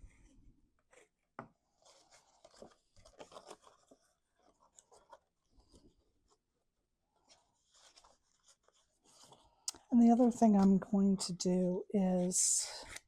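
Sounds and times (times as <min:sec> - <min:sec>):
paper rustling and creasing: 0:00.9 - 0:06.5, 0:07.2 - 0:09.6.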